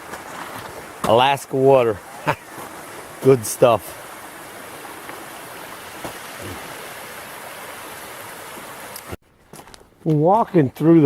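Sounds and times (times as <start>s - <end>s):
stream water running: 0.0s - 9.2s.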